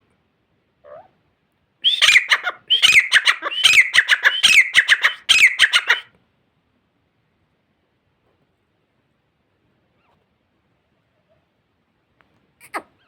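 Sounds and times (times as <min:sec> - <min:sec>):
francolin calling: 0:01.8 - 0:06.1.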